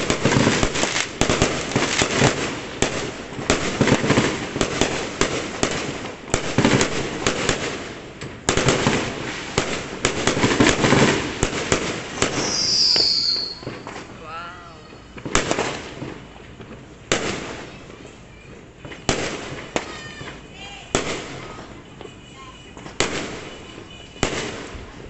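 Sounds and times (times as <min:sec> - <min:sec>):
fireworks bangs and crackling: 0:00.0 - 0:25.0
high falling whistle: 0:12.2 - 0:14.0.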